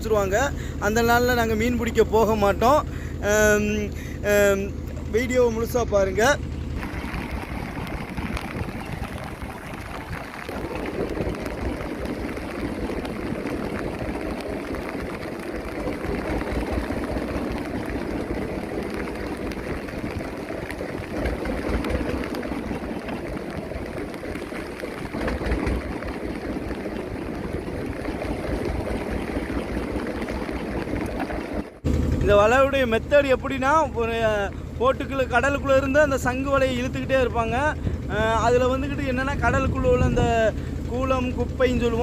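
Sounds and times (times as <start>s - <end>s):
low rumble: 0.0s - 42.0s
rushing gurgling water: 6.5s - 31.9s.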